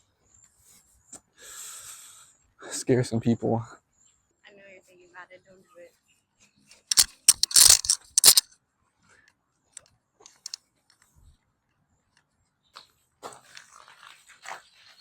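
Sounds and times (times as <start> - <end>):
loud rustling and crunching: 6.9 - 8.5.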